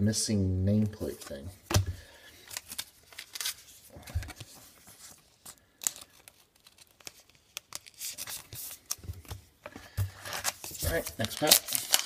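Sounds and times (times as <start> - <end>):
foil wrapper crinkling: 10.4 - 12.0.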